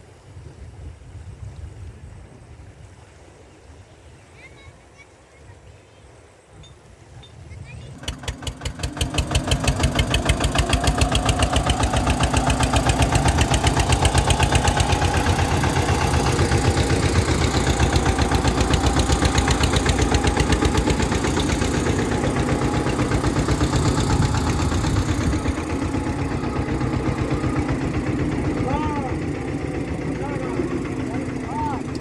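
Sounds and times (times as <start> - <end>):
engine chugging steadily: 7.9 - 32.0.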